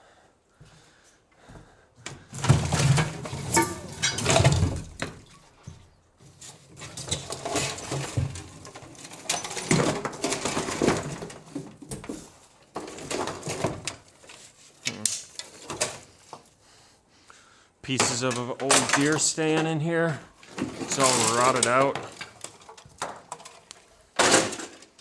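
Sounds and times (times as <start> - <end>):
scrap metal clattering in container: 2.4 - 5.0, 6.3 - 16.4, 20.4 - 25.0.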